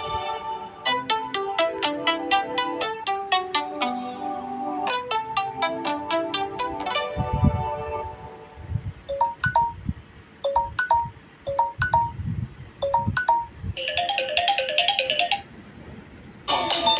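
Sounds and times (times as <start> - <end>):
electronic ringtone melody: 0.0 - 8.0, 9.1 - 9.8, 10.4 - 12.2, 12.8 - 15.5, 16.5 - 16.9.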